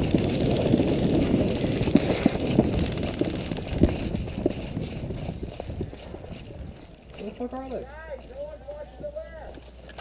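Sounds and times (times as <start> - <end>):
gear rustling: 0.0 - 7.5
footsteps on dirt: 0.2 - 10.0.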